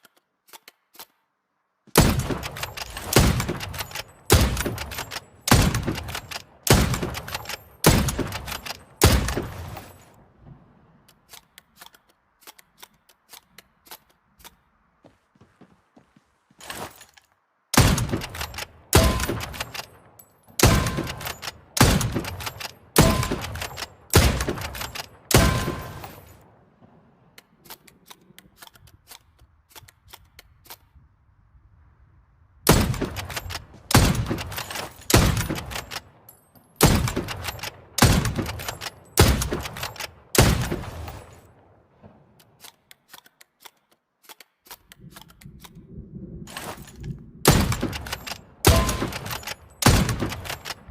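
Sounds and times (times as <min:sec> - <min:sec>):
rifle shots: 0:01.9 - 0:10.1, 0:17.8 - 0:27.0, 0:32.7 - 0:36.2, 0:36.8 - 0:42.6, 0:46.5 - 0:50.9.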